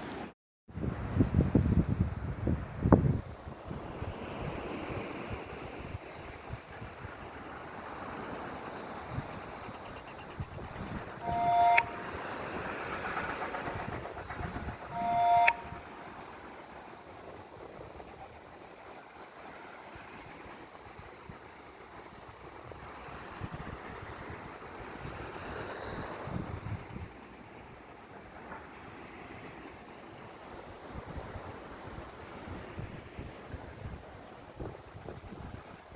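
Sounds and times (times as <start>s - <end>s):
sea waves washing ashore: 2.6s - 33.5s
wind on microphone: 9.0s - 15.9s
two-tone horn blasts: 10.3s - 16.1s.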